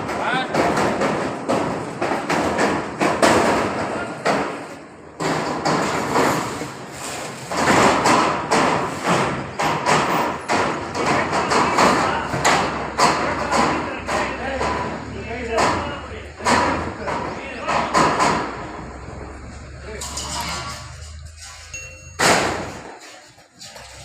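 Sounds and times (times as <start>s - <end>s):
metal pipes knocking: 7.5s - 18.9s.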